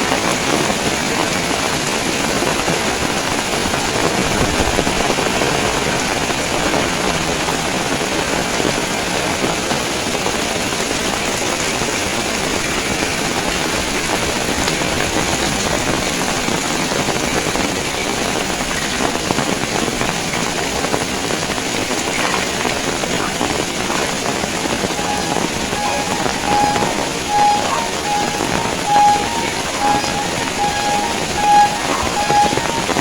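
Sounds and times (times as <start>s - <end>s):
heavy rain falling: 0.0s - 33.0s
short high beeps: 25.0s - 33.0s.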